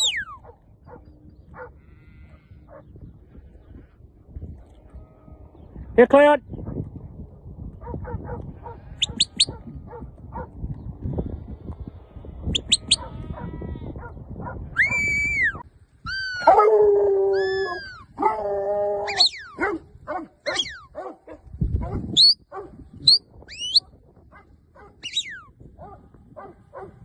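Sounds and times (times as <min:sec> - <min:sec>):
dogs barking and yelping: 0:00.0 - 0:03.0, 0:07.8 - 0:10.6, 0:12.6 - 0:27.0.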